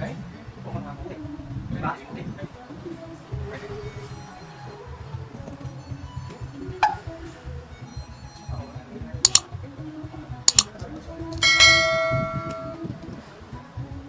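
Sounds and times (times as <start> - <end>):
sharp metallic clicks: 9.2 - 9.6, 10.4 - 13.1
metal object struck ringing: 11.4 - 12.8.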